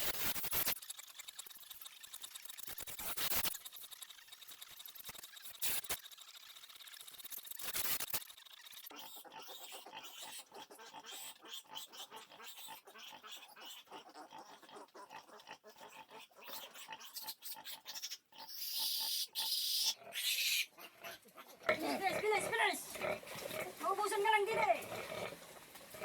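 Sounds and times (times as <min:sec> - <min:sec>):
pigs squealing: 0:07.6 - 0:26.0
pigs grunting: 0:08.9 - 0:26.0.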